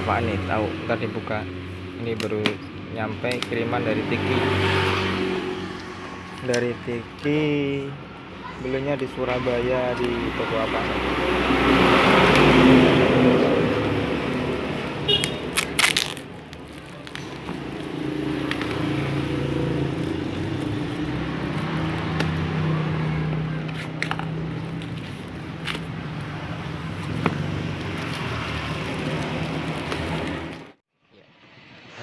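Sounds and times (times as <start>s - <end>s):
traffic hum: 0.0s - 32.0s
package crackling when handled: 15.5s - 17.7s.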